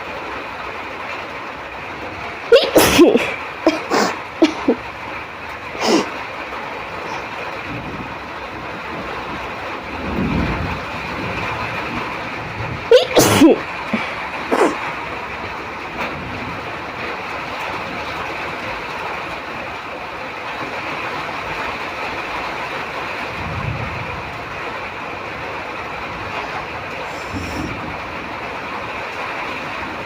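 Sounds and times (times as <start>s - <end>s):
rain falling: 0.0s - 30.0s
person sneezing loudly: 2.5s - 4.8s, 5.8s - 6.1s, 12.9s - 14.8s.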